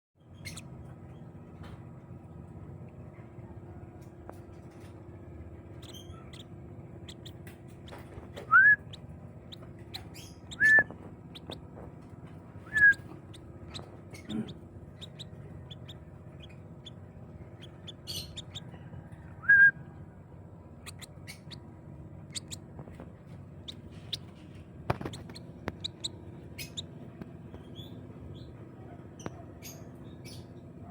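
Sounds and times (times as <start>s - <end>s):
lovebird calling: 0.3s - 0.7s, 5.7s - 11.6s, 12.6s - 18.8s, 20.8s - 21.6s, 22.2s - 22.9s, 23.6s - 26.9s
faint chirps and clicks: 5.7s - 18.6s, 22.3s - 28.0s.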